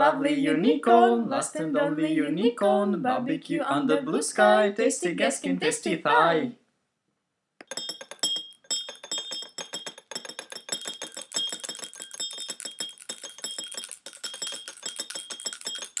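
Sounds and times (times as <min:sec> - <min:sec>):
small bells jingling: 0:07.7 - 0:16.0.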